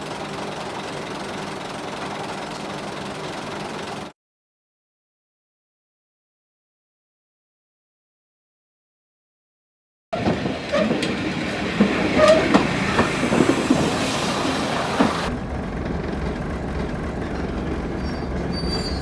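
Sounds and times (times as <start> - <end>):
train clicks and clacks: 0.0 - 4.1, 10.2 - 19.0
train rumble: 10.2 - 19.0
hiss: 11.5 - 15.3
metallic squeals: 11.8 - 15.3, 18.0 - 19.0.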